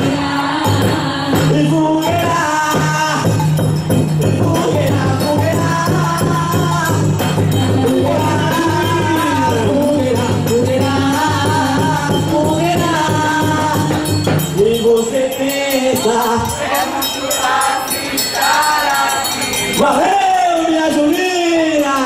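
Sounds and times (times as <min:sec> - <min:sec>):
jingling percussion: 0:00.0 - 0:22.0
voices singing: 0:00.0 - 0:22.0.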